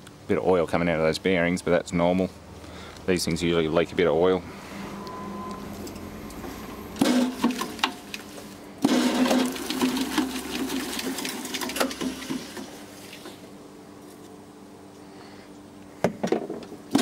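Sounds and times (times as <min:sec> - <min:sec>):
shredder clattering and rattling: 0:08.8 - 0:12.7.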